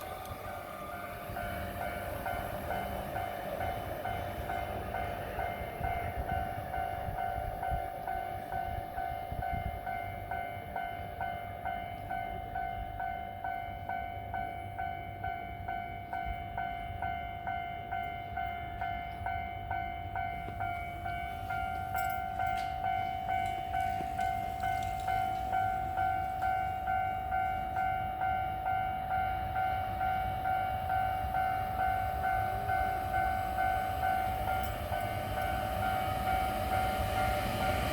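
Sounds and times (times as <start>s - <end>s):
level-crossing alarm ringing: 0.0s - 37.9s
low rumble of trains: 0.0s - 37.9s.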